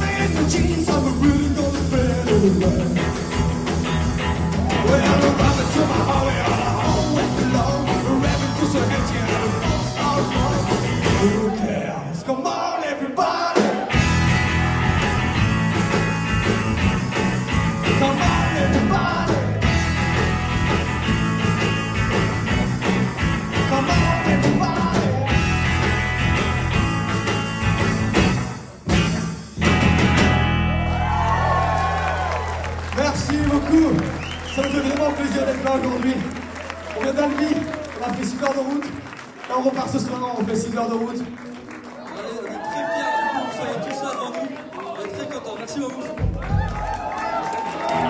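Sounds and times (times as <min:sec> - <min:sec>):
lead singer singing: 0:00.0 - 0:03.2, 0:04.7 - 0:13.9, 0:17.8 - 0:19.7, 0:23.6 - 0:25.3
rock and roll band playing: 0:00.0 - 0:42.0.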